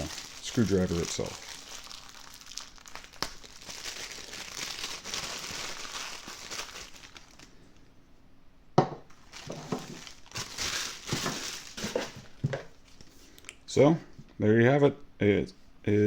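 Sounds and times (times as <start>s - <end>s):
packaging crinkling: 0.0s - 7.8s, 9.1s - 13.1s.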